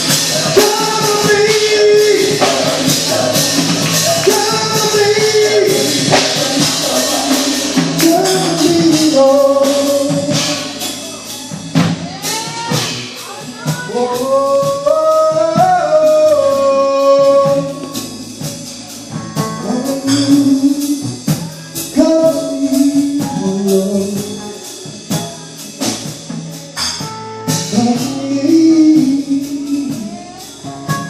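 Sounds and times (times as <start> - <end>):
person singing long held notes: 0.0 - 11.6, 12.2 - 18.2, 27.6 - 31.0
band with steady drum beat: 0.0 - 31.0.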